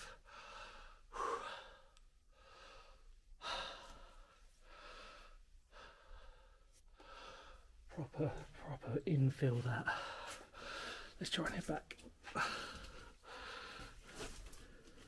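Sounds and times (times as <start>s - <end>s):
man breathing heavily: 0.0s - 7.9s, 9.8s - 11.2s, 12.2s - 15.0s.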